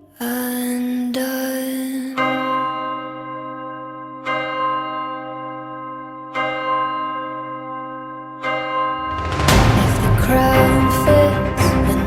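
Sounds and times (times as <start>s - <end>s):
deep bell ringing: 2.8s - 12.0s
background music: 8.7s - 12.0s.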